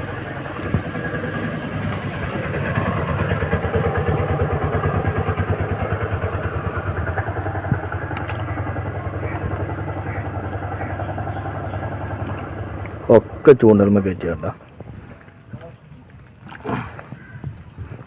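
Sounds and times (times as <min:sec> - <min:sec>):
small engine running: 0:00.0 - 0:14.2.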